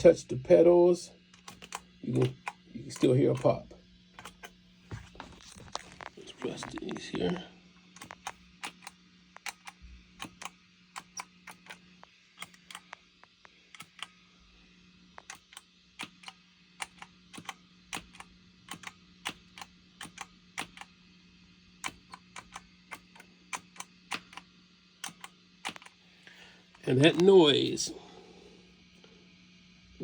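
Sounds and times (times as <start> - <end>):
amp hum: 0.0 - 30.0
footswitch clicks: 1.4 - 3.6, 4.2 - 4.6, 8.0 - 11.8, 12.4 - 12.9, 15.2 - 20.9, 21.8 - 24.4, 25.0 - 25.9.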